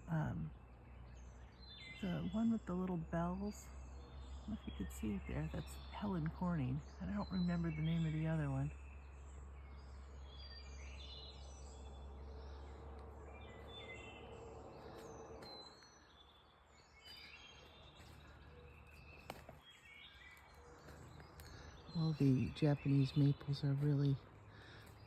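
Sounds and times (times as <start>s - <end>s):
low steady hum: 0.0s - 25.0s
small birds chirping: 0.0s - 25.0s.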